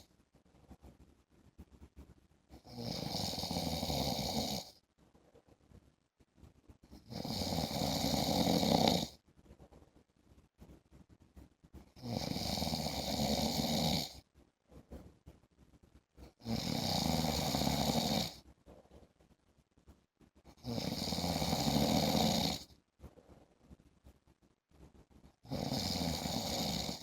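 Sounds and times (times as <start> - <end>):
man snoring: 2.7 - 4.7, 7.1 - 9.2, 12.0 - 14.2, 16.4 - 18.4, 20.6 - 22.7, 25.5 - 27.0.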